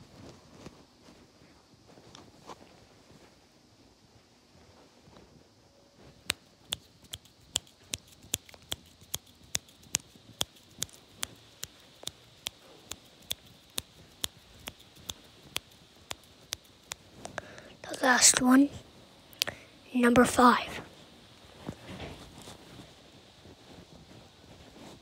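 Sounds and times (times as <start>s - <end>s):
sharp repeated click: 6.7s - 17.3s.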